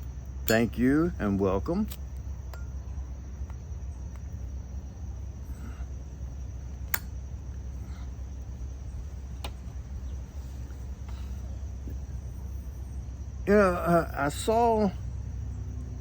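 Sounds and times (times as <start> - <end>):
sharp clicks: 0.0 - 0.8, 1.7 - 2.8, 6.6 - 7.7, 9.4 - 11.2
high-pitched whine: 0.0 - 16.0
steady low hum: 0.0 - 16.0.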